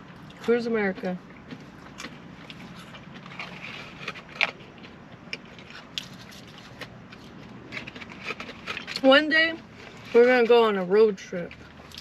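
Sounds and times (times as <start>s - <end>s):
steady low hum: 0.0s - 12.0s
chewing: 0.2s - 10.2s, 11.5s - 12.0s
food wrappers crackling: 2.4s - 10.5s.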